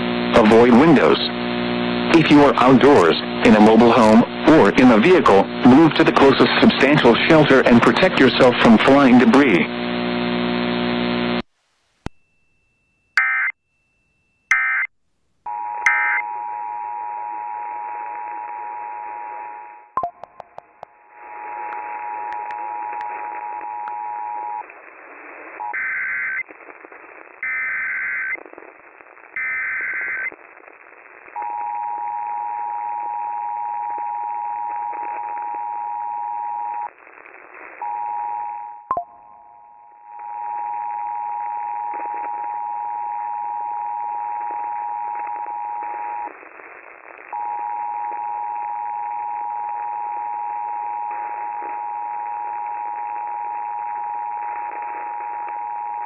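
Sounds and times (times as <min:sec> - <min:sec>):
radio static: 0:00.0 - 0:11.5, 0:20.3 - 0:31.4, 0:51.1 - 0:55.6.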